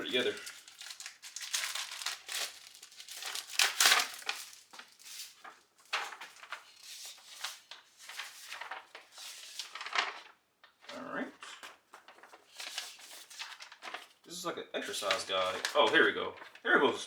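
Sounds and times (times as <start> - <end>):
packaging crinkling: 0.0 - 10.3, 11.6 - 14.2, 14.9 - 16.6.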